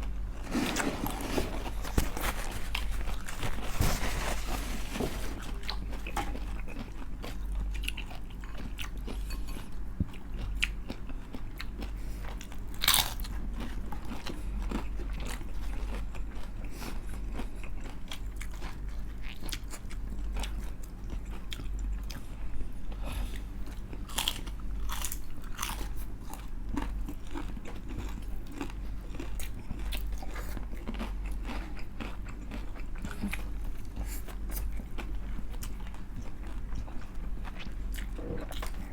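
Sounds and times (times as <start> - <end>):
crunching fried chicken skin: 11.7 - 22.0, 23.9 - 26.2.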